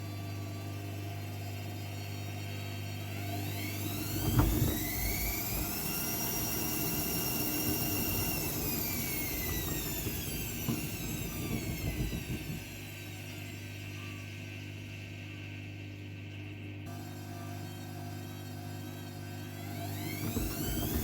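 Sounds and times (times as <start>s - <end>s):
washing machine drum whining: 0.0s - 15.6s, 16.9s - 21.0s
wet towels knocking in drum: 9.3s - 12.7s.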